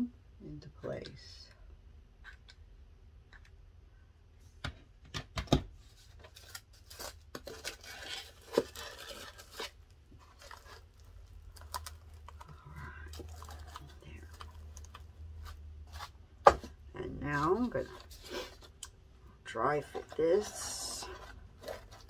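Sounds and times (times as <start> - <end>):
plastic rustling and scraping: 5.8 - 18.9, 19.8 - 22.0.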